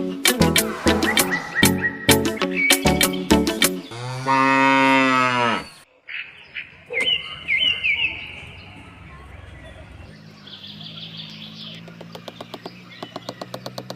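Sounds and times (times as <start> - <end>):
plucked music: 0.0 - 3.9
bird chirps: 0.6 - 4.1, 5.6 - 13.9
cow mooing: 3.9 - 5.8.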